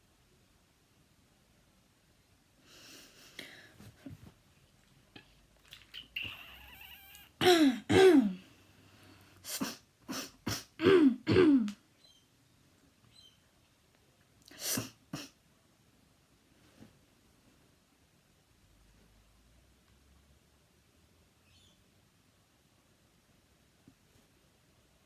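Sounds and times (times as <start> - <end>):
person coughing: 7.4 - 8.4, 9.6 - 11.8.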